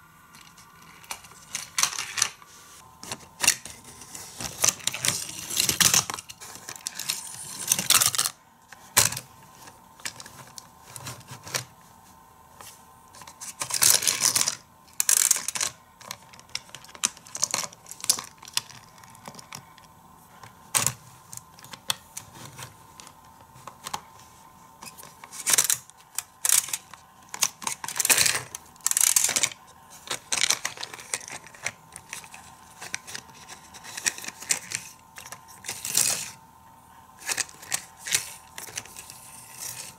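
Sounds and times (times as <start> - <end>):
toy cars clicking and rattling: 13.5 - 19.5, 25.3 - 36.4.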